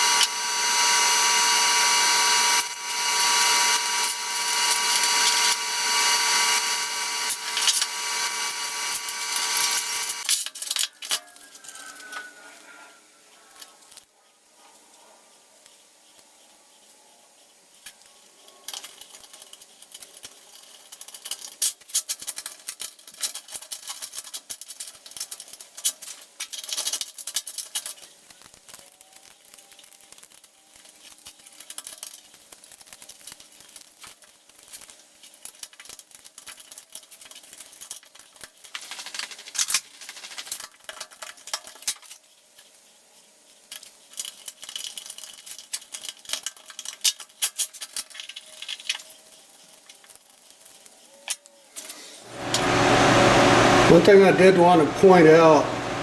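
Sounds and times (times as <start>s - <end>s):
hand tools clicking and scraping: 1.6s - 12.6s.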